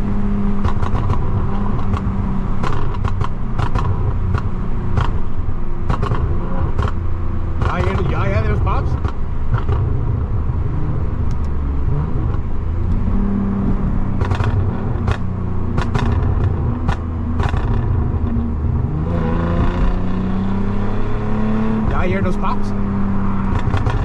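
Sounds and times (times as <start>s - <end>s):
exhaust pops and crackles: 0.0s - 10.5s, 13.6s - 18.9s, 23.4s - 24.0s
car engine revving: 0.0s - 24.0s.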